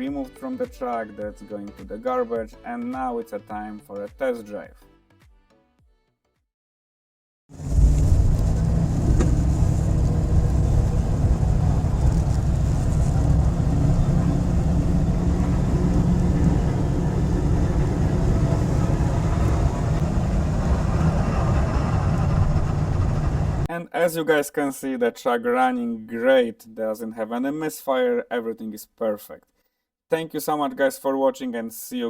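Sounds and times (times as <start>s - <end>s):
road noise: 7.5s - 23.7s
truck engine running: 7.6s - 23.7s.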